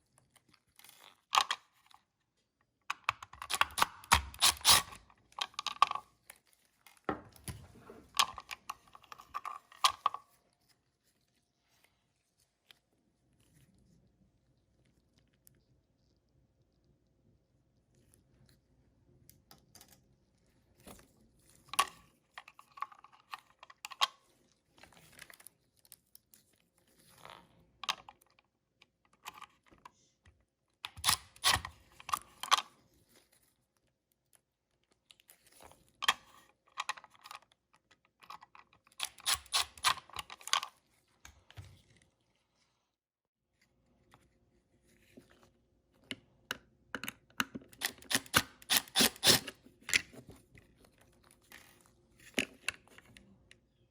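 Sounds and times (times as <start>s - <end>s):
plastic parts clicking and rattling: 0.1s - 2.1s, 2.9s - 10.4s, 20.8s - 29.9s, 34.8s - 42.1s, 46.0s - 53.6s.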